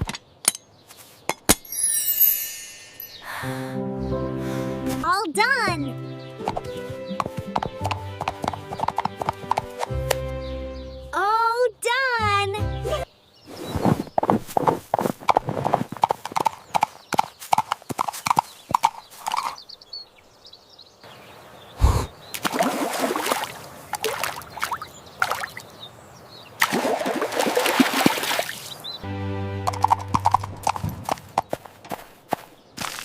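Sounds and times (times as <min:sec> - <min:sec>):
clicking beats: 0:06.4 - 0:10.3, 0:29.6 - 0:32.0.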